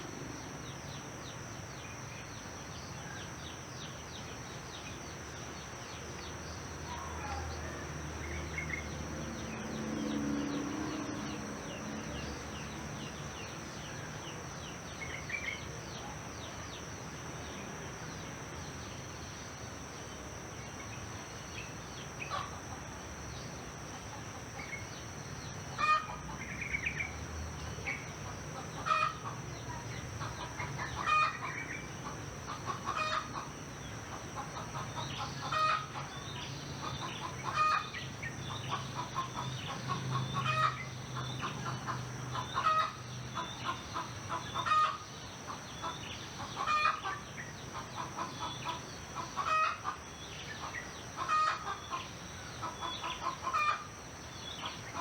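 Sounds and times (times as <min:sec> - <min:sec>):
crickets droning: 0:00.0 - 0:55.0
chickens clucking: 0:38.5 - 0:53.9.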